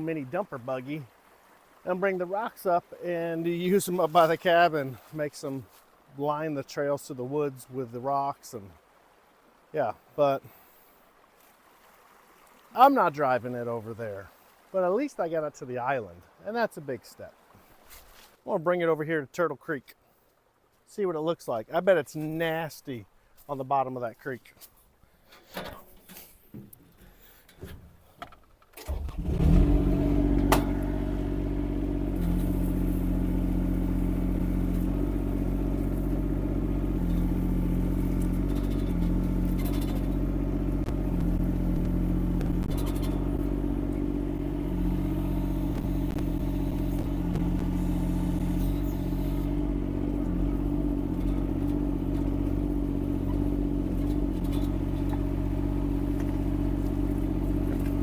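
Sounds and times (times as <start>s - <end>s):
excavator diesel engine running: 28.9s - 58.0s.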